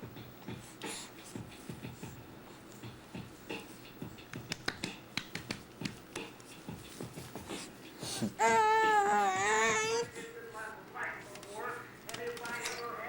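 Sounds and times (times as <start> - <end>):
toddler wailing: 8.4 - 10.1.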